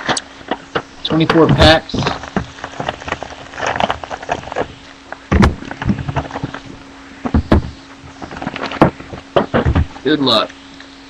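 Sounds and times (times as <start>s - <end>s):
foil packs crinkling: 0.2s - 6.9s, 8.0s - 10.0s
cardboard box thumps: 5.3s - 10.0s.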